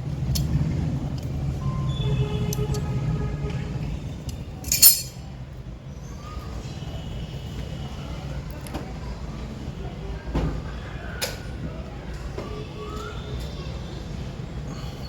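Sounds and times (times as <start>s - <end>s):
sharp clink of hard object: 4.6s - 5.2s.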